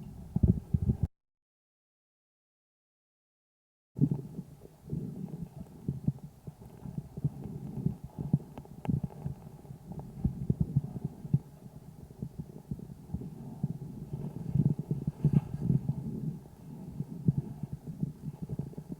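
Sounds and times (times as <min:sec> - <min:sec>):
muffled breath sounds: 0:04.0 - 0:18.9
short irregular pops and thumps: 0:04.0 - 0:18.9.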